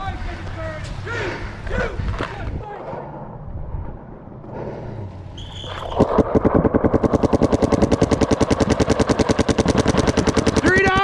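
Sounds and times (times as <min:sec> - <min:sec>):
paintball markers firing rapidly: 0:05.7 - 0:11.0.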